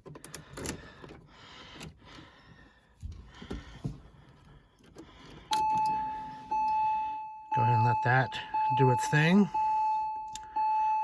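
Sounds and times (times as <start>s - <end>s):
dashboard warning chime: 5.5s - 11.0s.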